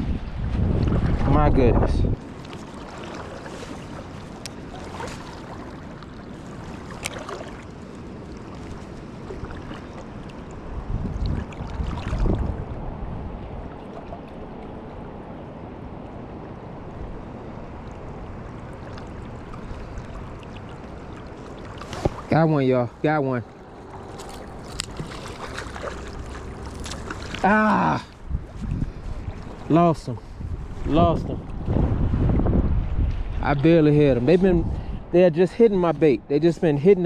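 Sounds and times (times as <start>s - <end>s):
stream water flowing: 2.2s - 31.7s.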